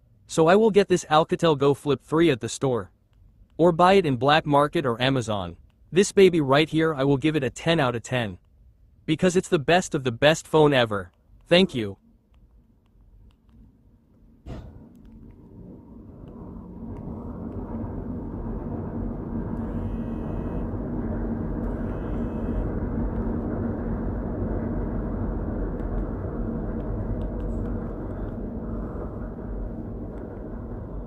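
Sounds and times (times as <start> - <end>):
low rumbling noise: 11.3 - 31.0
faint high-pitched tones: 19.6 - 20.8, 21.6 - 22.7.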